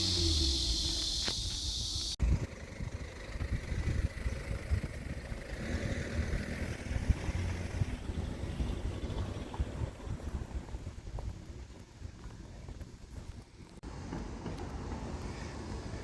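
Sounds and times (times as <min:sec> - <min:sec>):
steady high hiss: 0:00.0 - 0:04.1
low vehicle rumble: 0:00.0 - 0:11.7.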